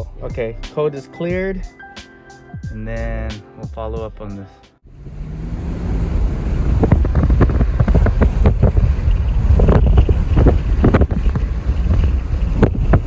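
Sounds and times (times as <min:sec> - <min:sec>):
wind buffeting microphone: 0:04.9 - 0:13.0.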